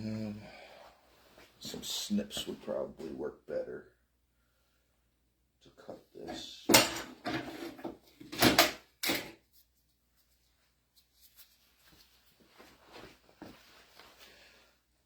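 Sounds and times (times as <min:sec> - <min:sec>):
tools clattering and scraping: 0:06.3 - 0:09.4
faint light taps and rustles: 0:09.6 - 0:14.3.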